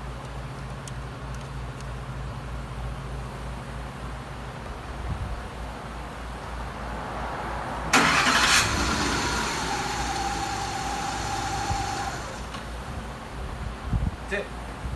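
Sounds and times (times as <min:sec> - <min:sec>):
faint engine whine: 0:07.8 - 0:14.9
truck engine cranking and idling: 0:07.9 - 0:13.9.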